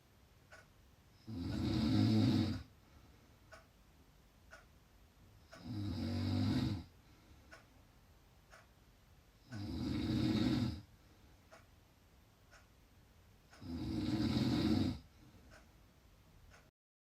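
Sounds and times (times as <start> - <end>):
faint ticking: 0.0 - 16.7
person snoring loudly: 1.2 - 2.7, 5.6 - 6.9, 9.5 - 10.9, 13.6 - 15.0.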